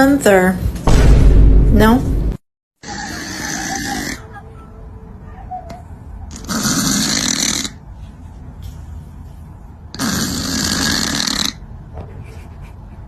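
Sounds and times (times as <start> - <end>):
snoring: 10.0 - 11.6.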